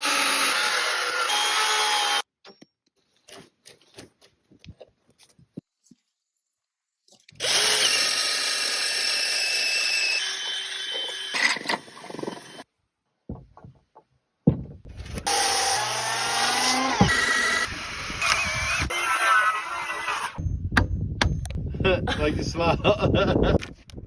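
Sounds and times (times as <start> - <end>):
power drill running: 0.0 - 2.2, 7.4 - 12.6, 15.1 - 20.4.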